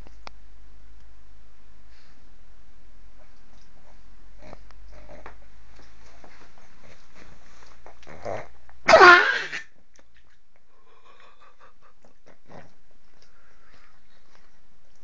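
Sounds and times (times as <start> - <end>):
dog sneezing: 8.9 - 9.7.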